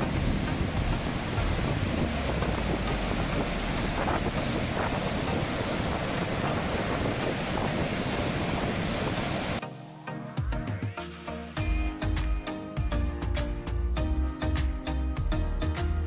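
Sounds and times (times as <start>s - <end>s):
wind buffeting microphone: 0.0s - 9.6s.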